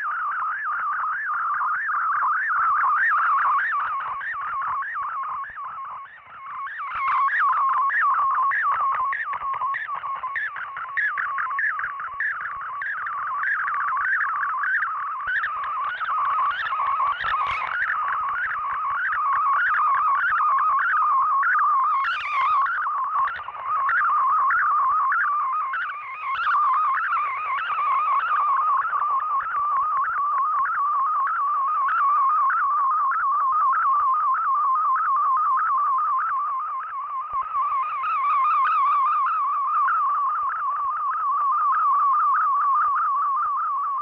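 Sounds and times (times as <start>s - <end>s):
warbling digital data tone: 0.0s - 44.0s.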